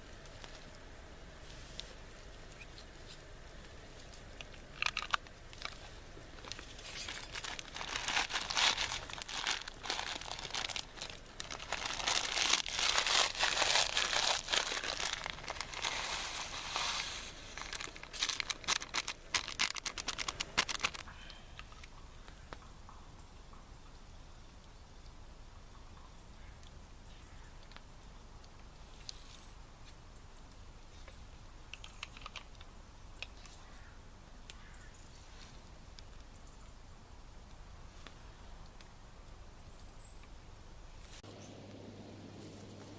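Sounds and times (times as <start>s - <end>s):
plastic packaging crinkling and tearing: 4.0s - 21.1s.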